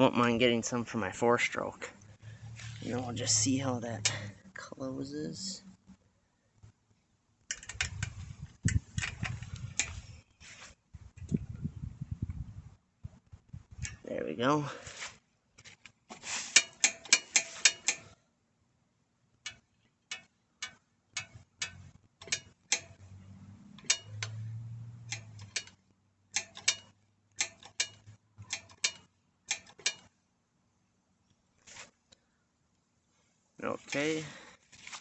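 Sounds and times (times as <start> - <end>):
bicycle brake metallic clicks: 7.5 - 10.0, 16.6 - 18.2, 19.4 - 23.0, 23.7 - 30.1.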